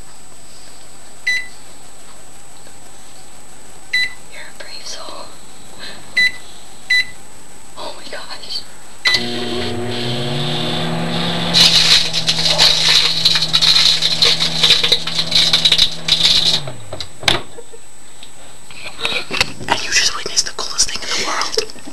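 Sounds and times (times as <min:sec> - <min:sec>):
microwave oven humming: 0:09.0 - 0:17.7
discs crackling and snapping: 0:09.2 - 0:17.1.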